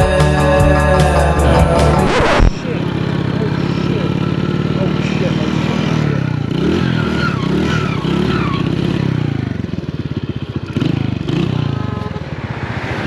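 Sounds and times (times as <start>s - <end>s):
motorcycle engine revving: 0.9s - 13.0s.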